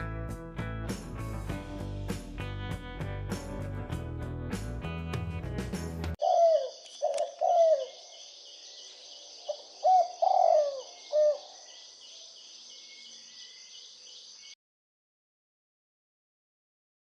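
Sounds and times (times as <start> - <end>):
dove cooing: 6.2 - 8.0, 9.5 - 11.7.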